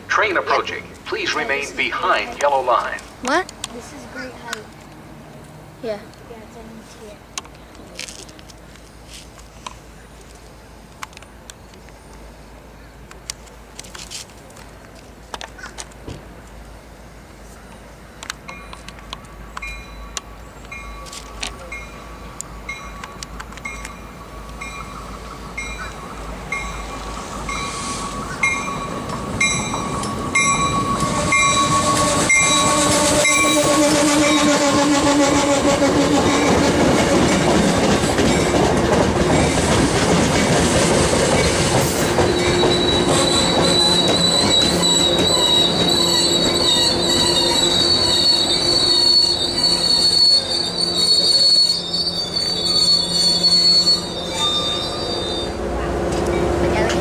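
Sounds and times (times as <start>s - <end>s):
train passing: 0.0s - 57.0s
train wheels squealing on rails: 18.5s - 57.0s
bell ringing: 26.5s - 33.7s.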